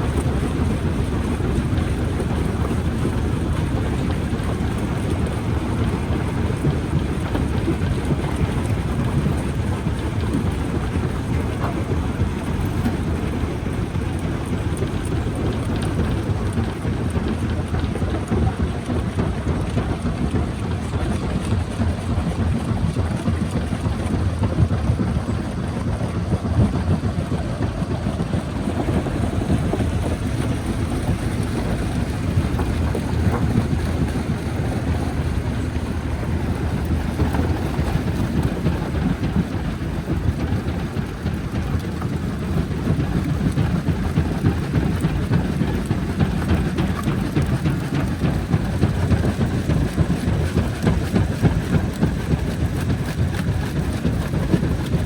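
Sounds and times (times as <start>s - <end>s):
rock crusher rumbling: 28.0s - 55.0s.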